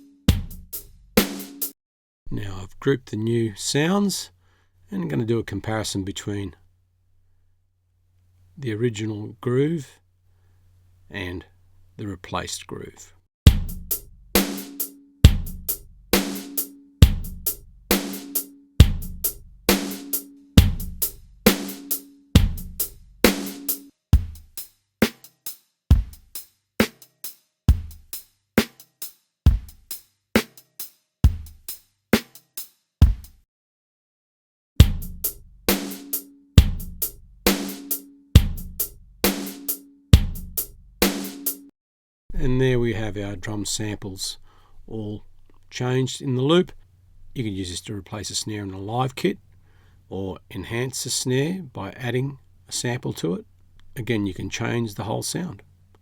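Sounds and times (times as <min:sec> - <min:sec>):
drum groove: 0:00.0 - 0:01.8, 0:13.5 - 0:33.4, 0:34.8 - 0:41.7
hi-hat hits: 0:00.0 - 0:01.8, 0:13.5 - 0:33.4, 0:34.8 - 0:41.7
sampled drum pattern: 0:00.0 - 0:01.8, 0:13.5 - 0:33.4, 0:34.8 - 0:41.7
kick drum: 0:00.3 - 0:00.8, 0:13.5 - 0:14.0, 0:15.3 - 0:15.8, 0:17.0 - 0:17.6, 0:18.8 - 0:19.4, 0:20.6 - 0:21.1, 0:22.4 - 0:23.0, 0:24.2 - 0:24.6, 0:25.9 - 0:26.3, 0:27.7 - 0:28.1, 0:29.5 - 0:29.9, 0:31.3 - 0:31.7, 0:33.0 - 0:33.4, 0:34.8 - 0:35.4, 0:36.6 - 0:37.1, 0:38.4 - 0:39.0, 0:40.2 - 0:40.7.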